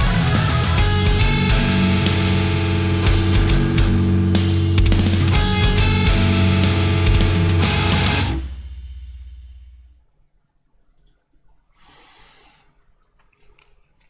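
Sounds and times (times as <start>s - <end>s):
rock band final hit: 0.0s - 9.9s
low bass note ringing: 0.0s - 10.0s.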